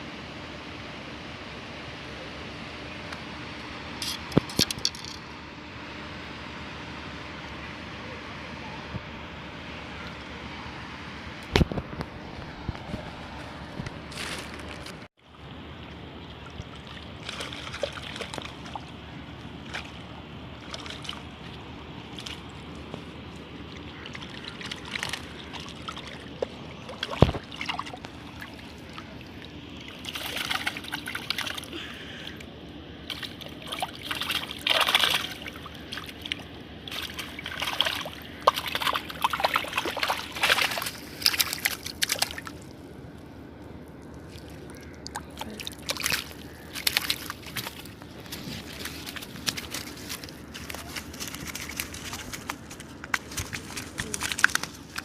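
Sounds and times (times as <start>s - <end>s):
water sloshing and splashing: 14.1s - 43.0s, 43.6s - 55.0s.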